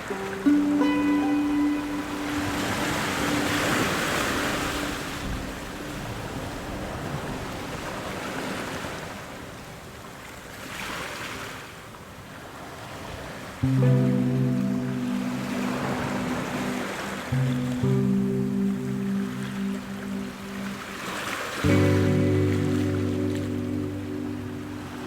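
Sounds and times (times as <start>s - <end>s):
sea waves washing in: 0.0s - 25.0s.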